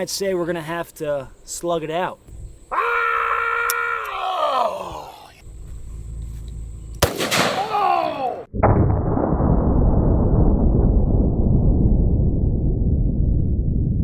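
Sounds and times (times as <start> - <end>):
person shouting: 2.7 - 5.4, 7.5 - 8.5
gunshot: 7.0 - 9.8.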